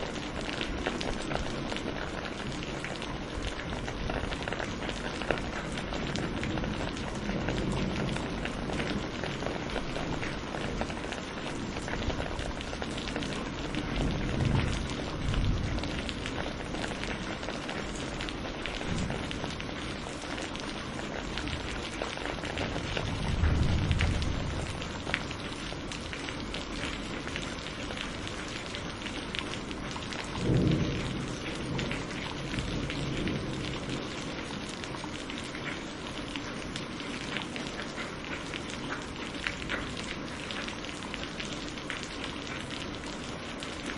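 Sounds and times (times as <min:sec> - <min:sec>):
rain falling: 0:00.0 - 0:43.9
low rumbles of thunder: 0:03.5 - 0:20.2, 0:21.2 - 0:25.4, 0:29.8 - 0:34.7.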